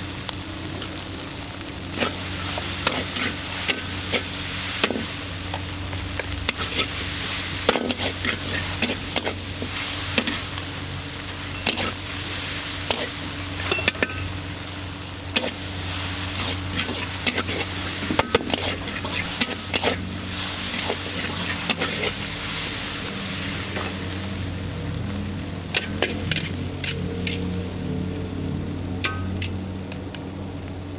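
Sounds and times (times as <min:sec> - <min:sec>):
noodles sizzling in a wok: 0:00.0 - 0:30.9
metal spatula clanking on wok: 0:13.6 - 0:14.3, 0:29.0 - 0:29.6.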